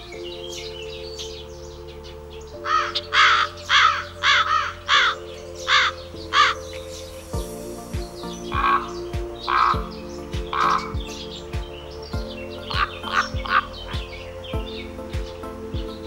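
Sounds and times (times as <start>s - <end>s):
background music of sustained chords: 0.0s - 16.0s.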